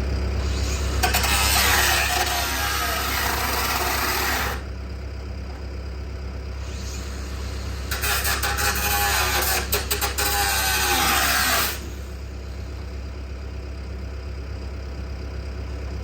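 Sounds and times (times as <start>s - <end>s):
low engine-like hum: 0.0s - 1.2s, 4.4s - 8.0s, 11.8s - 16.0s
loud hissing mechanical noise: 0.3s - 4.7s, 6.5s - 13.1s.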